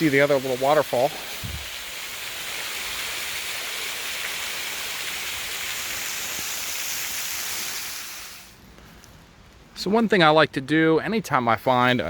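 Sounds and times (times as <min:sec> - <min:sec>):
small waterfall splashing: 0:00.0 - 0:08.6.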